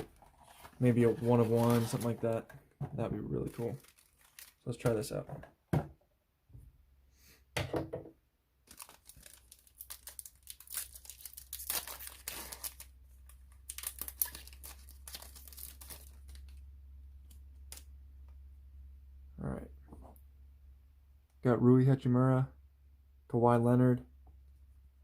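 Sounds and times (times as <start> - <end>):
plastic packaging tearing and crinkling: 0.0 - 2.4, 3.3 - 4.7, 8.7 - 16.6.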